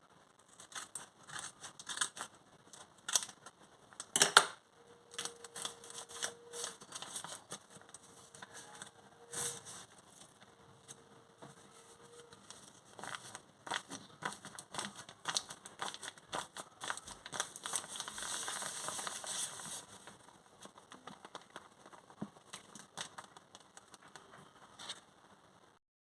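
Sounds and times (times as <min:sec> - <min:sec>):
crinkly packaging rustling: 0:04.9 - 0:25.2.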